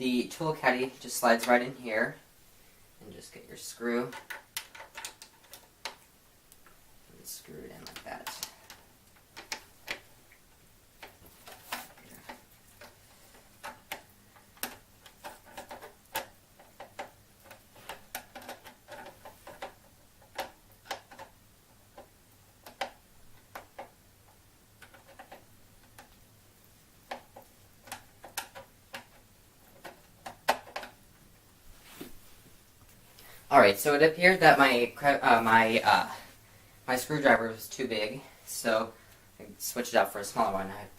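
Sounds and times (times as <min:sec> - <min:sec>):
screwdriver clicking and scraping: 0:11.0 - 0:21.3.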